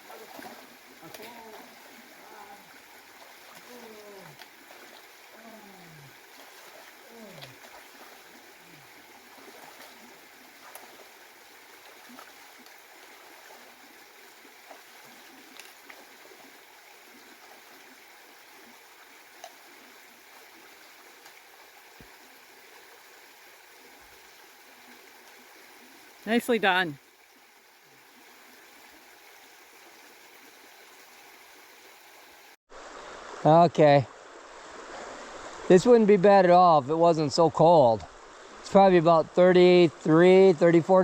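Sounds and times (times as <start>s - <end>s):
faint clicks and splashes: 0.0s - 22.5s
creek water running: 0.0s - 41.0s.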